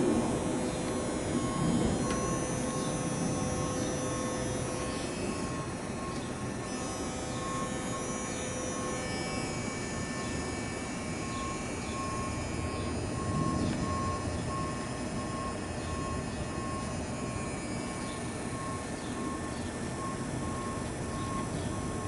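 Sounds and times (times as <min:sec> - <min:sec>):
machine rumble: 0:00.0 - 0:22.0
vehicle back-up alarm beeping: 0:00.0 - 0:22.0.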